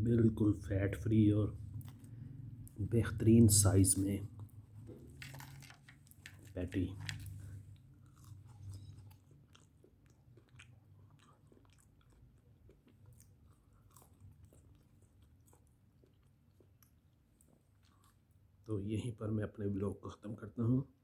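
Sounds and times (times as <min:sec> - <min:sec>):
person chewing and crunching: 0:05.2 - 0:18.6.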